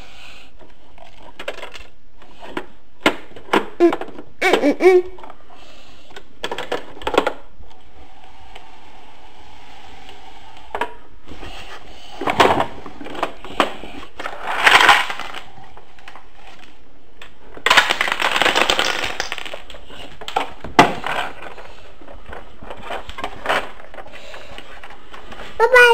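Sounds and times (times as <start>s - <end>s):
toy trash rattling: 17.6s - 19.7s.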